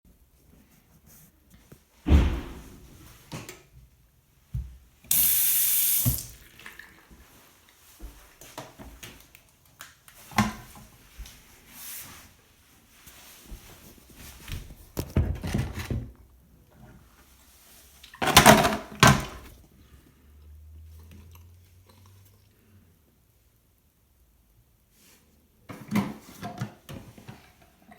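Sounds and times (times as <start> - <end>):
toilet flush clunk: 5.1 - 6.9
toilet water rushing: 5.1 - 6.9.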